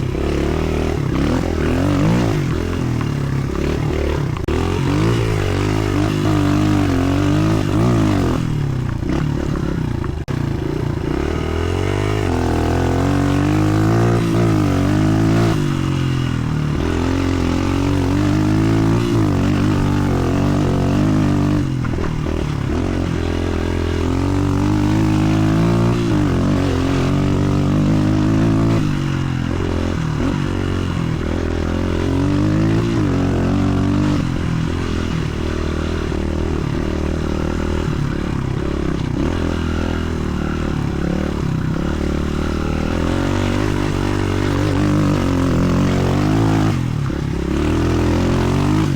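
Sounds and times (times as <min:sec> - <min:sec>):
motorcycle engine revving: 0:00.0 - 0:48.9.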